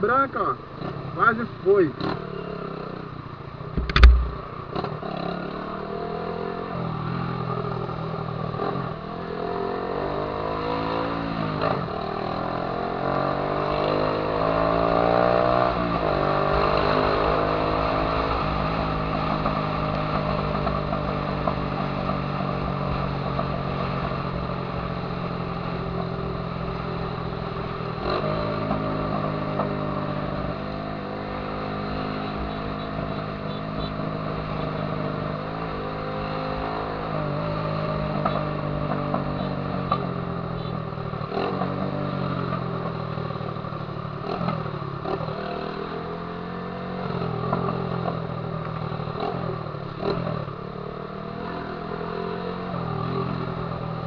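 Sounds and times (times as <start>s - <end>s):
loud low thump: 3.7s - 4.7s
motorcycle engine accelerating: 3.7s - 54.0s.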